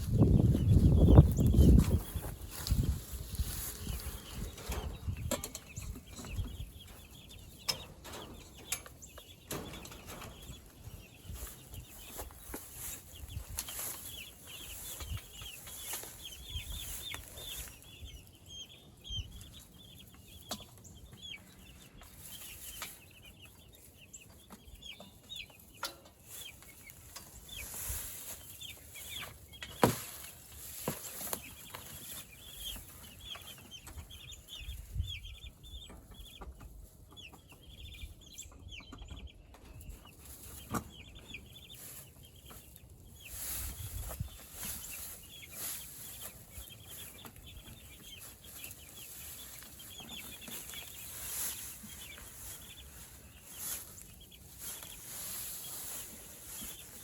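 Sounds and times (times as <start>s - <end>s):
chickens cheeping and clucking: 0.0s - 57.0s
knocks and rustling: 7.6s - 14.0s.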